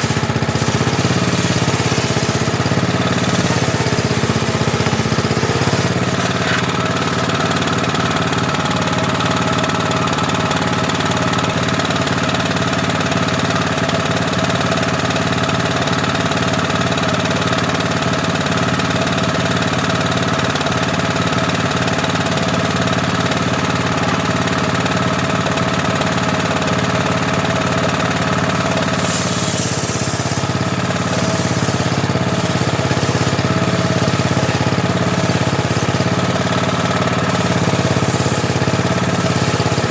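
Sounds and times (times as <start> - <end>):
table saw engine running: 0.0 - 39.9
brief high hiss: 5.6 - 8.2, 28.8 - 33.0.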